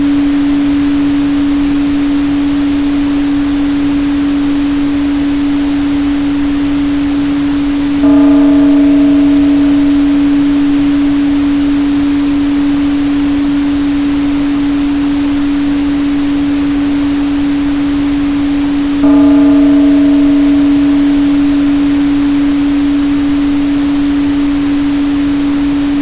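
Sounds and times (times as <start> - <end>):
steady pure tone: 2.2 - 26.0
struck bell-like chime: 8.0 - 13.2, 19.0 - 24.2.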